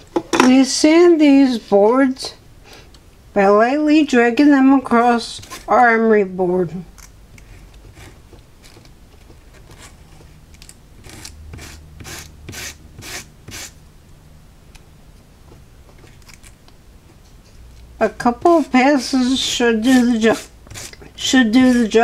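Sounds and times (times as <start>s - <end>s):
wood sanding strokes: 19.7s - 22.0s.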